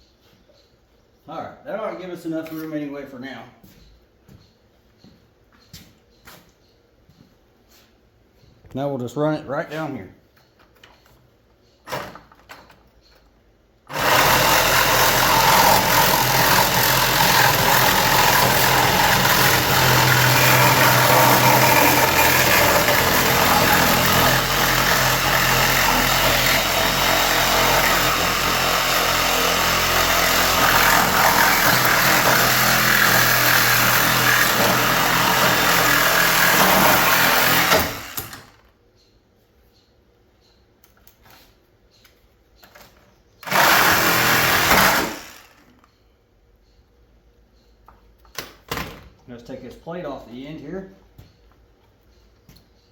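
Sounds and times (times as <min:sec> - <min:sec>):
power tool cutting metal: 0:13.9 - 0:38.5, 0:43.4 - 0:45.6.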